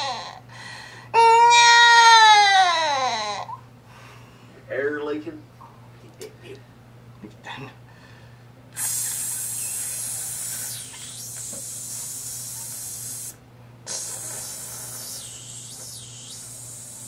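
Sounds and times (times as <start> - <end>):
man hissing with mouth: 8.8 - 17.0.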